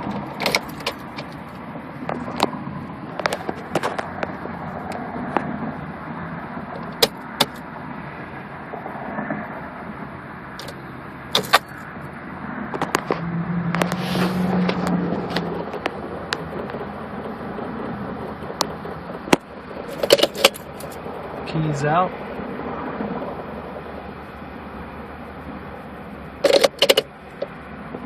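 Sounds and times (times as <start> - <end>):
ignition clicks: 0.0 - 1.5, 6.8 - 7.6, 10.6 - 11.8, 18.5 - 21.0, 26.4 - 27.5
keys jingling: 10.6 - 11.8.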